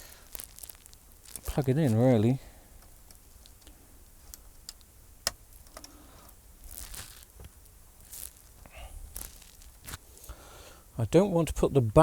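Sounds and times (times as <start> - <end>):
light clicks of parts: 2.8 - 6.4
hands rustling: 6.6 - 10.4.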